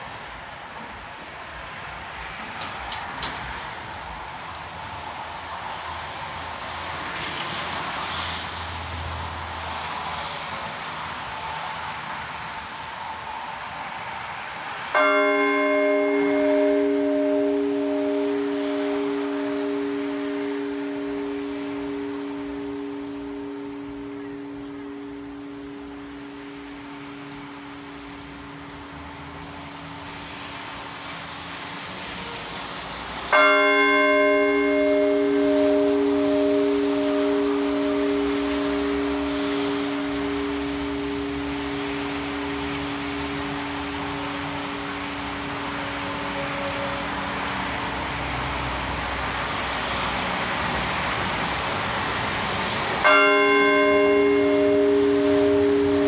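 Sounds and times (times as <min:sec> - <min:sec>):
church bell ringing: 0:00.0 - 0:56.0
steady rushing noise: 0:00.0 - 0:56.0.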